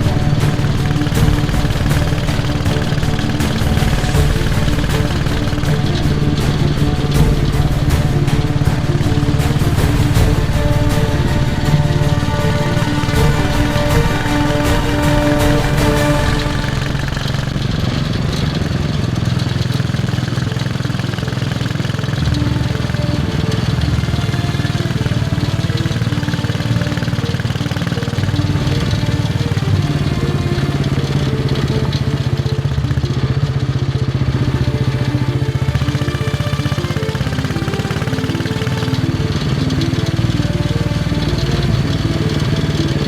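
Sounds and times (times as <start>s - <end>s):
motorcycle engine thumping: 0.0s - 34.6s.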